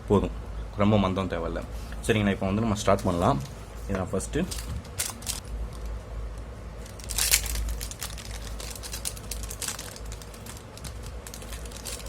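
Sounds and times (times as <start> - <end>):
hands rustling small parts: 6.8 - 12.0.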